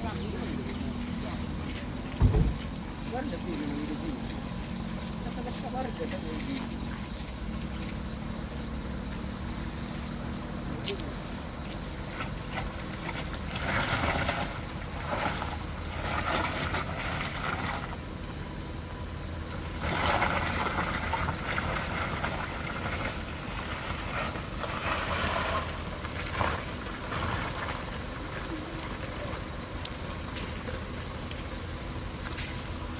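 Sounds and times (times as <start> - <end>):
heavy vehicle engines rumbling: 0.0 - 32.9
passing traffic rushing: 19.4 - 32.9.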